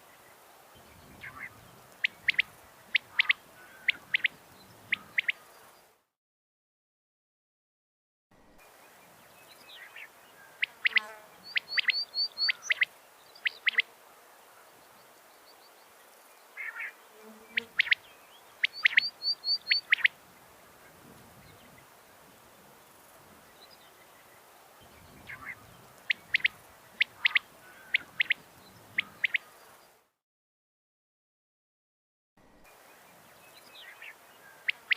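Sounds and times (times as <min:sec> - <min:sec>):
quail calling: 0:01.2 - 0:05.5, 0:10.6 - 0:13.9, 0:16.6 - 0:17.0, 0:17.6 - 0:18.0, 0:18.6 - 0:20.1, 0:25.3 - 0:29.5.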